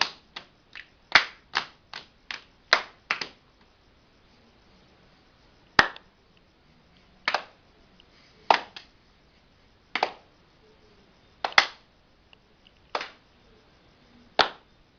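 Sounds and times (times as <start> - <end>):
hand claps: 0.0 - 3.4, 5.8 - 6.1, 7.2 - 7.6, 8.5 - 8.9, 9.9 - 10.3, 11.4 - 11.8, 12.9 - 13.2, 14.4 - 14.7.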